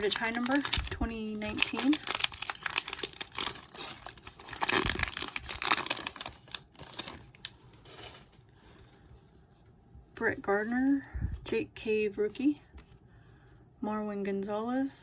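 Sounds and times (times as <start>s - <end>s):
foil wrapper tearing and crinkling: 0.0s - 7.5s.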